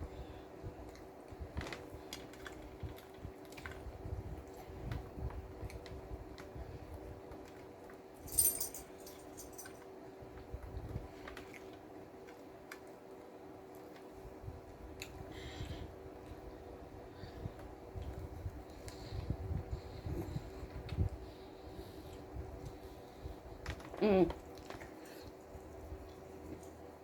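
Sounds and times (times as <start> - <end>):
faint steady hum: 0.0 - 27.0
chewing a sandwich: 0.5 - 8.1, 10.2 - 27.0
metallic jingle: 8.2 - 9.8.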